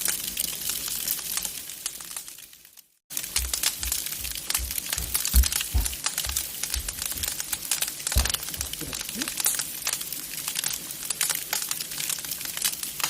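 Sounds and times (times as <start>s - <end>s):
wood fire crackling: 0.0s - 13.0s
dull low thumps: 3.4s - 7.5s, 8.1s - 9.2s.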